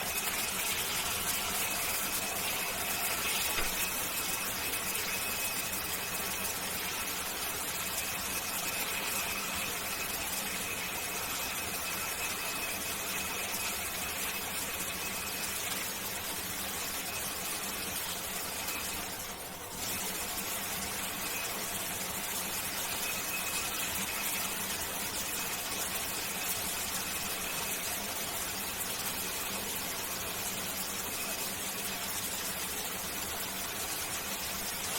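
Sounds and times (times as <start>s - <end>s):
faint high steady tone: 0.0s - 15.8s.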